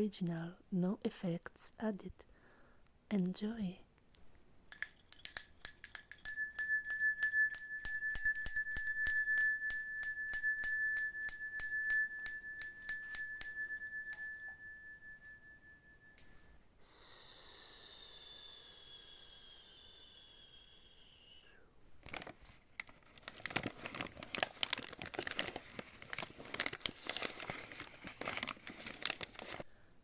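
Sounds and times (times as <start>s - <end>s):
small bell struck rapidly: 4.8s - 16.2s
breathy high sliding tone: 16.8s - 21.6s.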